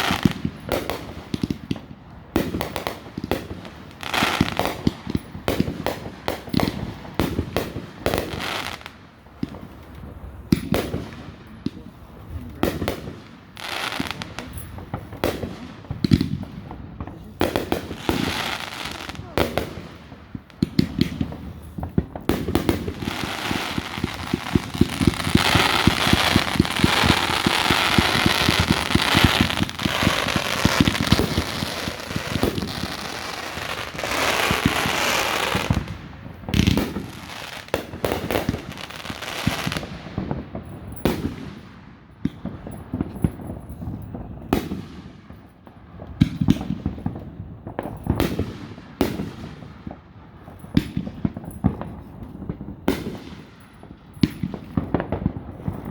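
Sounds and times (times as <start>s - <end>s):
fireworks bangs: 0.0s - 55.9s
crackling hiss: 22.7s - 39.7s.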